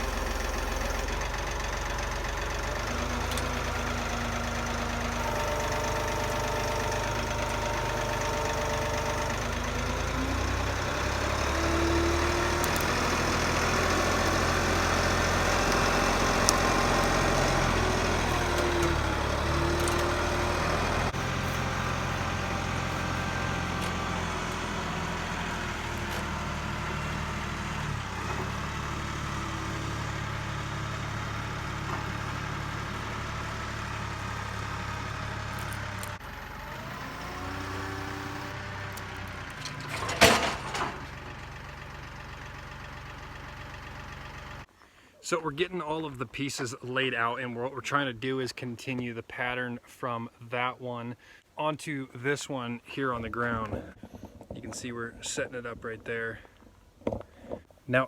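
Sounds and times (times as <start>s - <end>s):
tractor engine running: 0.0s - 44.7s.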